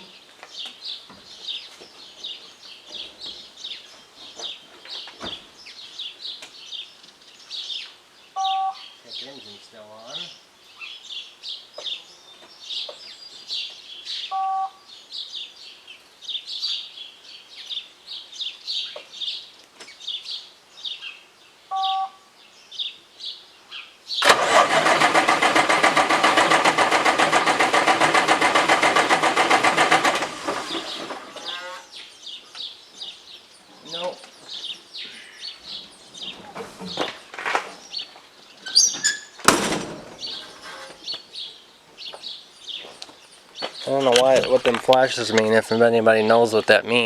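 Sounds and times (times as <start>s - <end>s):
birds chirping: 0.0s - 47.0s
short electronic beeps: 8.4s - 8.8s, 14.3s - 14.8s, 21.7s - 22.2s
diesel engine cranking: 24.2s - 31.9s, 38.7s - 41.1s.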